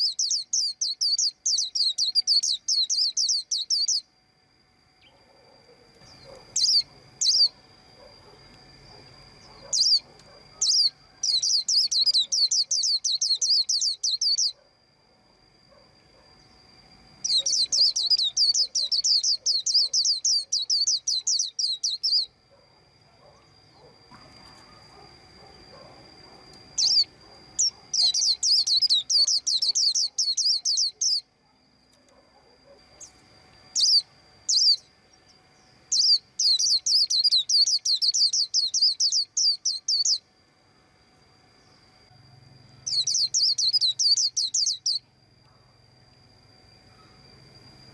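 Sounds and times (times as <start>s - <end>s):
bird chirping: 0.0s - 4.1s, 5.0s - 14.7s, 17.2s - 22.4s, 23.0s - 31.3s, 33.0s - 40.2s, 42.8s - 45.0s.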